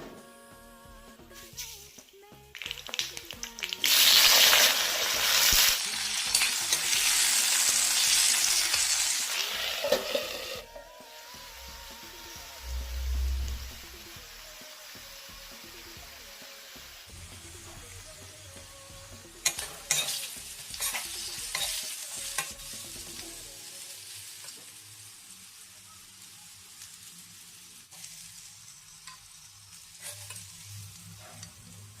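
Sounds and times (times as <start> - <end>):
potatoes sizzling in oil: 1.4 - 32.0
spatula scraping a pan: 29.9 - 30.8.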